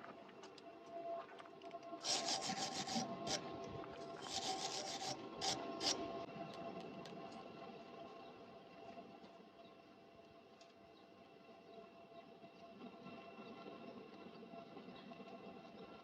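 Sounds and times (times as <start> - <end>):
hand tool scraping steel: 2.0 - 6.0.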